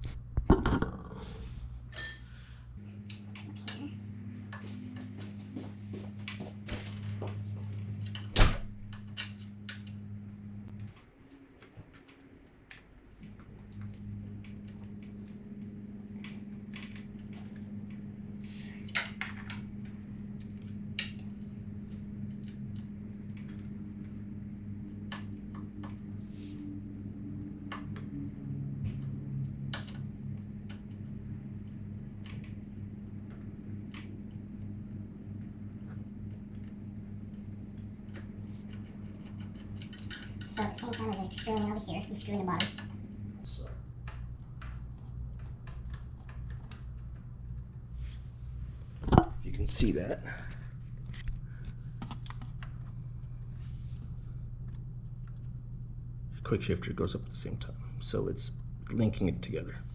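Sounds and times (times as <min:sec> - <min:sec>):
steady low hum: 0:00.0 - 0:59.9
metal tools clinking: 0:01.9 - 0:02.4.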